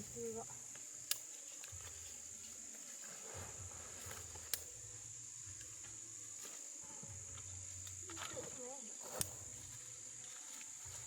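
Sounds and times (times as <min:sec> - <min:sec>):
insects chirring: 0:00.0 - 0:11.0.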